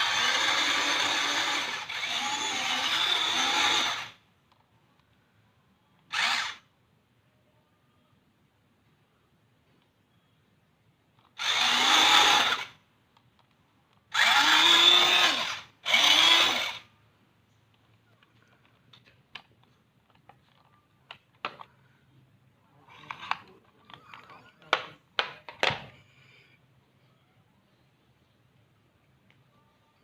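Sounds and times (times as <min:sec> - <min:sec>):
power tool motor spinning: 0:00.0 - 0:04.2, 0:06.1 - 0:06.6, 0:11.4 - 0:12.8, 0:14.1 - 0:16.9.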